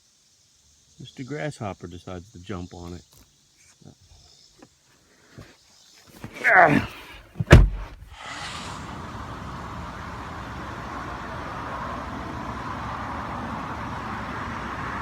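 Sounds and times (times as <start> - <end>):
car engine and road noise: 7.2 - 15.0.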